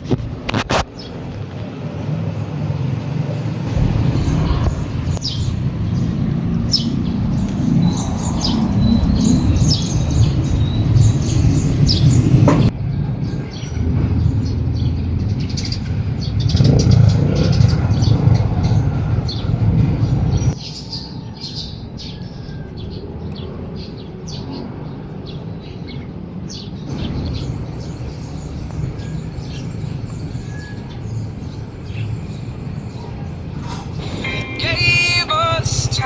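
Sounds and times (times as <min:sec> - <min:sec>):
birds chirping: 0:00.5 - 0:36.0
low rumble: 0:03.6 - 0:20.6.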